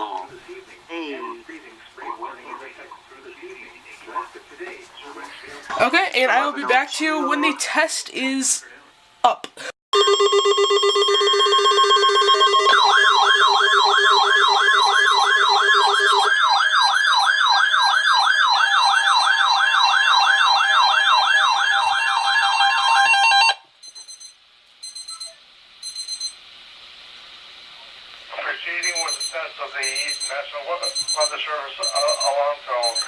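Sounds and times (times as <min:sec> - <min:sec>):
warbling siren: 0:10.0 - 0:23.6
steady alarm tones: 0:10.0 - 0:26.4, 0:28.8 - 0:33.0.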